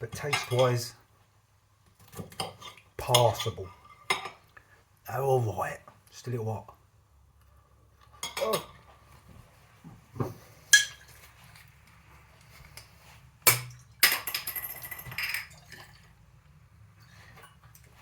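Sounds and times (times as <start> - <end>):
cutlery clinking against plate: 10.7 - 11.1.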